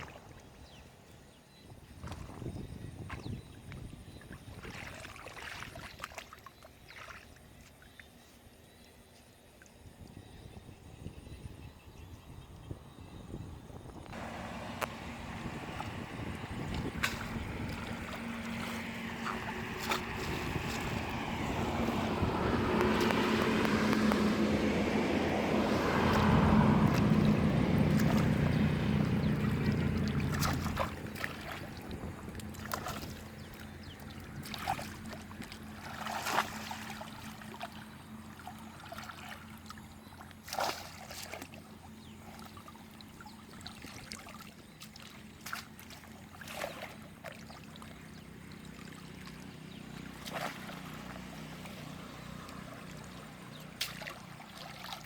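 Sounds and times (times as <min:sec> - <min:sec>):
small water splashes: 0:00.0 - 0:10.4, 0:14.1 - 0:55.0
motor hum: 0:08.5 - 0:55.0
water trickling: 0:14.1 - 0:55.0.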